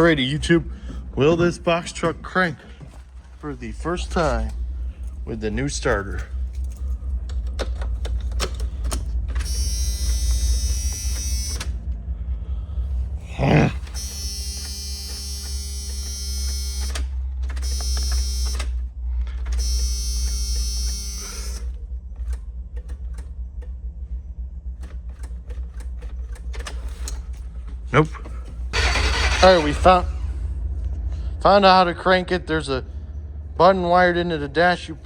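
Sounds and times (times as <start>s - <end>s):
steady low rumble: 0.0s - 15.8s, 21.4s - 28.8s, 29.4s - 35.0s
dashboard warning buzzer: 9.3s - 11.8s, 13.8s - 18.8s, 19.4s - 21.8s, 28.7s - 29.8s
scattered clicks: 13.8s - 23.9s, 24.7s - 28.3s.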